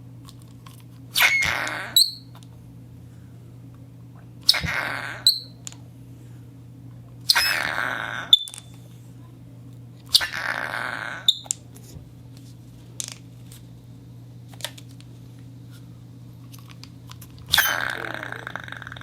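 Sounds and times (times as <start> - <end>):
steady low hum: 0.0 - 19.0
rubber squeaking and hissing: 1.2 - 2.2, 7.3 - 7.9, 17.5 - 18.4.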